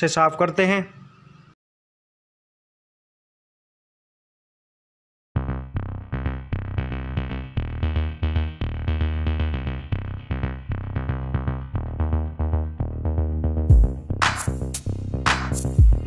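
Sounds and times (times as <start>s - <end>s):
electronic music with drum machine: 5.4s - 16.0s.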